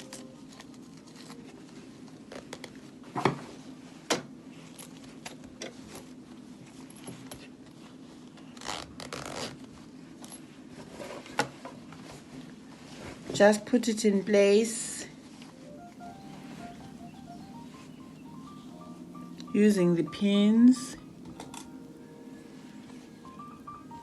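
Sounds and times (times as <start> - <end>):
denim rustling: 5.8 - 13.6, 15.2 - 19.8
zipper clicks: 8.5 - 9.7
zipper rasping scrape: 8.6 - 9.7.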